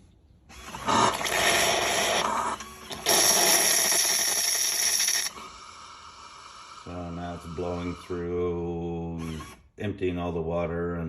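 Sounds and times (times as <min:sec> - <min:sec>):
coffee machine steam hiss: 0:03.1 - 0:05.3.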